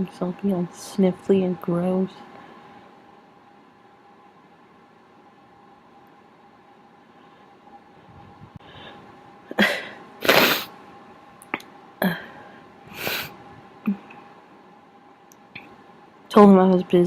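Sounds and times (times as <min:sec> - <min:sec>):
person sneezing: 0:09.5 - 0:10.7.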